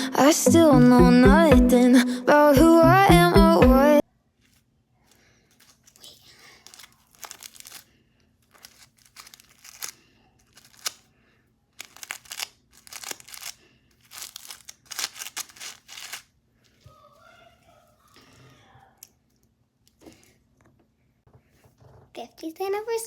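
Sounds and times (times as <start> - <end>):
crinkling and rustling: 4.3 - 11.1, 11.7 - 22.3.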